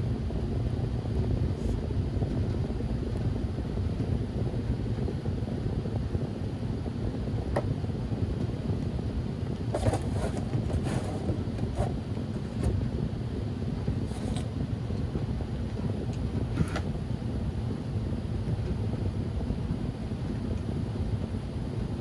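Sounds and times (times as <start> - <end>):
air conditioner rumble: 0.0 - 22.0
handling knocks and rustles: 9.6 - 12.8, 14.0 - 14.5.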